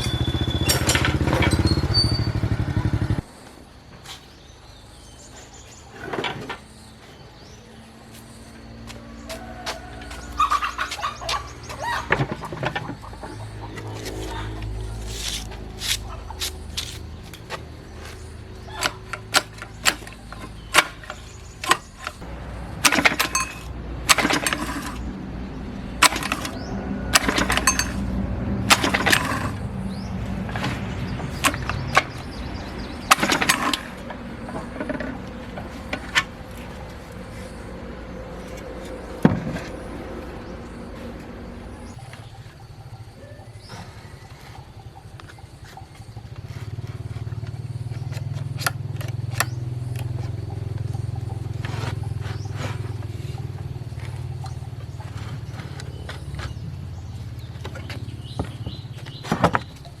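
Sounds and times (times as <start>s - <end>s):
metal knocks and clanks: 22.8s - 25.1s, 26.0s - 29.6s.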